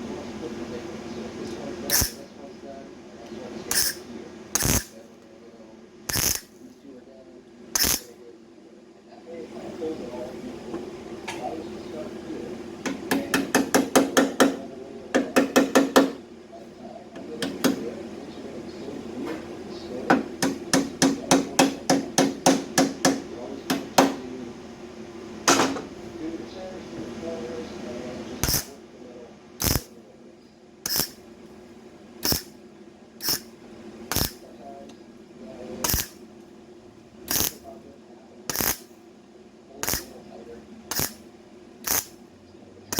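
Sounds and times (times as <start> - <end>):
mig welder crackling: 1.9 - 2.2, 3.7 - 4.0, 4.6 - 5.0, 6.1 - 6.6, 7.8 - 8.1, 28.4 - 28.7, 29.6 - 29.9, 30.9 - 31.2, 32.2 - 32.6, 33.2 - 33.5, 34.1 - 34.4, 35.8 - 36.2, 37.3 - 37.6, 38.5 - 38.9, 39.8 - 40.1, 40.9 - 41.2, 41.8 - 42.2.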